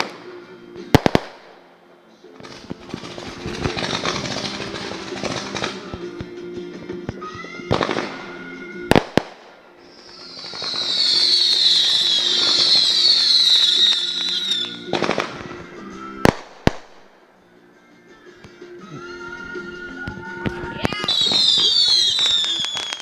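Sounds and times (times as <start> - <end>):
faint music: 0.0 - 23.0
firework bangs: 0.9 - 1.6, 2.4 - 6.1, 7.3 - 17.2, 20.1 - 23.0
firework crackling hiss: 2.4 - 6.1, 7.3 - 17.2, 20.2 - 23.0.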